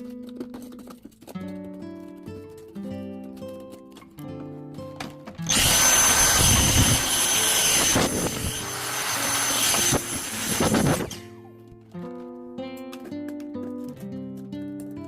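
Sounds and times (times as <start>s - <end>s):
soft acoustic guitar music: 0.0s - 5.5s, 11.2s - 15.0s
small motor whining with air rush: 5.5s - 11.2s.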